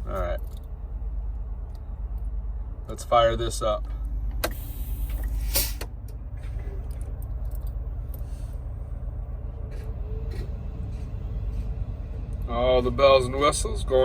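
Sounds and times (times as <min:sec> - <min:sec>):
truck engine low rumble: 0:00.0 - 0:14.0
truck engine starting: 0:03.9 - 0:14.0.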